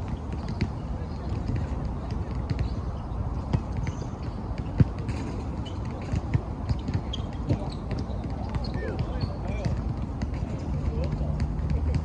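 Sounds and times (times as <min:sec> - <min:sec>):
faint high voices or squeaks: 0:07.0 - 0:09.6.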